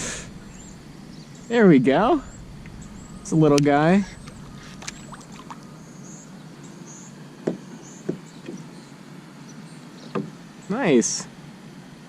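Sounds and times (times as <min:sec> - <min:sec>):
water splashing against kayak: 0:04.2 - 0:05.7.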